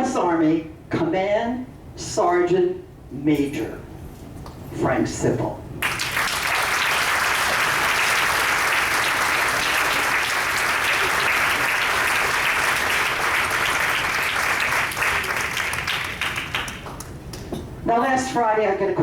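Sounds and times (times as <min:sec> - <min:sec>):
audience applauding: 0:05.8 - 0:17.2.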